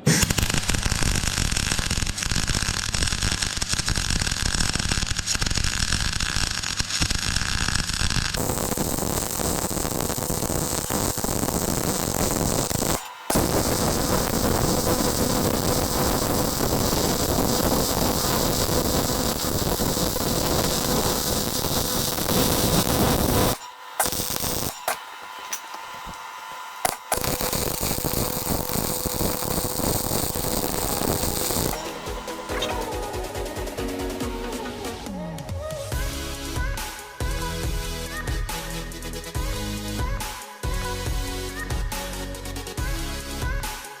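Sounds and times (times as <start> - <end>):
welding arc crackling hiss: 0.0 - 34.3
clicks: 22.2 - 33.0.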